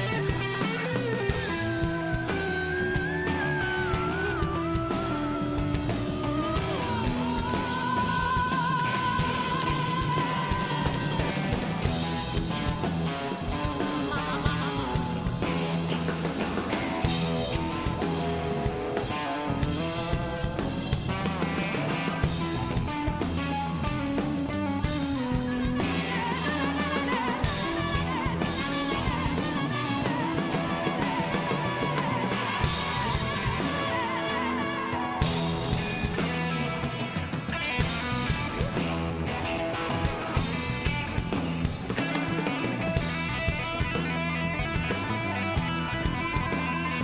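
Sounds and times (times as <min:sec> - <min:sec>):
electric guitar: 0:00.0 - 0:47.0
guitar lead with bending notes: 0:00.0 - 0:47.0
live hard rock band playing: 0:00.0 - 0:47.0.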